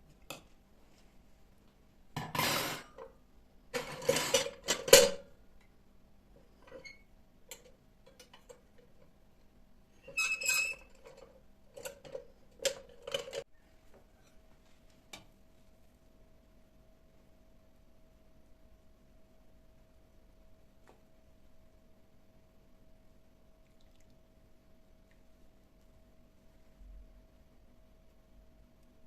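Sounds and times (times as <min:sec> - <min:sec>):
dishes and cutlery clattering: 0:03.8 - 0:05.3.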